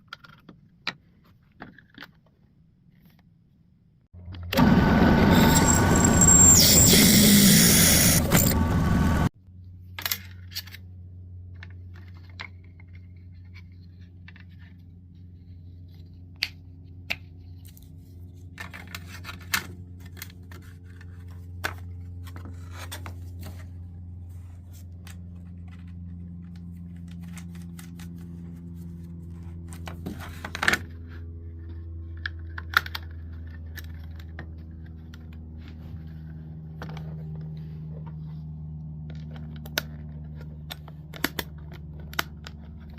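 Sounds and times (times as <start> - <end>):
steady low hum: 4.2 - 10.0
loud noise: 4.4 - 9.3.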